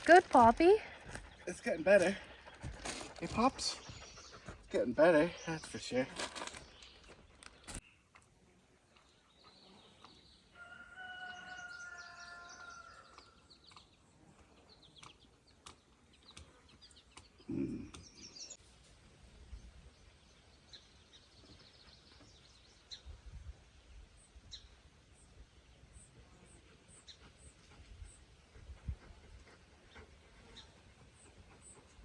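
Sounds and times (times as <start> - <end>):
small birds chirping: 0.0 - 32.0
faint rooster crowing: 10.5 - 13.4.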